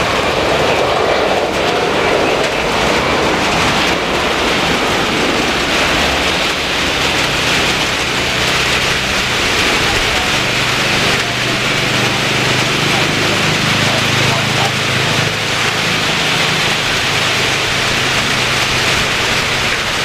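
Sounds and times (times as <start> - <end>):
heavy rain: 0.0 - 20.0
jet engine rushing: 0.0 - 20.0
low hum: 0.0 - 20.0.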